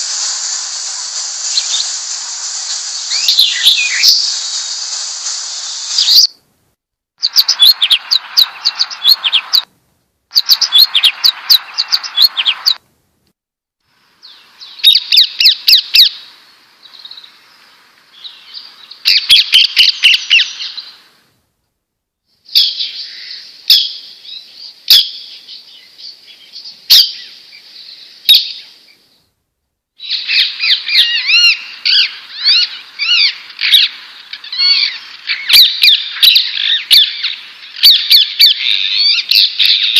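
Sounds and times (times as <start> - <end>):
songbirds chirping and twittering: 2.6 - 4.5, 7.2 - 9.7, 10.3 - 12.8, 13.9 - 21.2, 22.3 - 29.3, 30.0 - 39.9.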